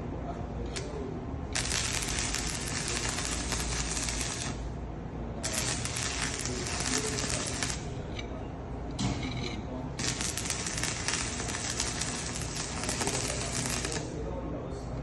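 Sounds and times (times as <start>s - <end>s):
welding arc crackling: 1.5s - 4.7s, 5.4s - 8.0s, 10.0s - 14.2s.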